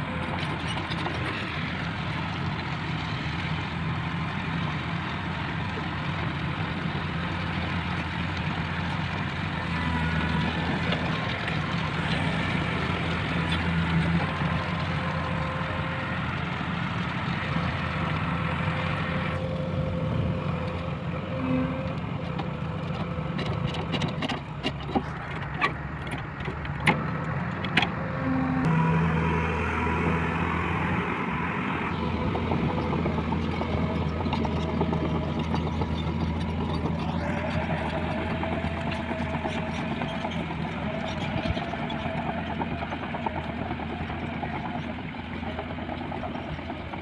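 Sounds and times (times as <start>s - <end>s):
heavy diesel engine running: 0.0s - 47.0s
sharp metallic knocks and clicks: 22.9s - 28.0s.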